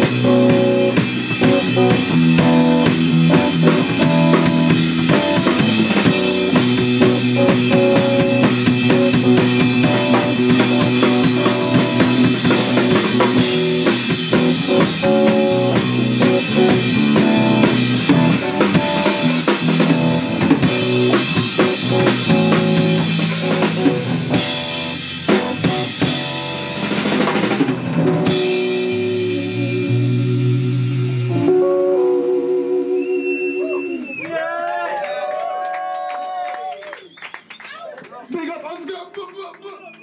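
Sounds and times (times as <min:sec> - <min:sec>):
drum kit: 0:00.0 - 0:34.2
guitar: 0:00.0 - 0:34.4.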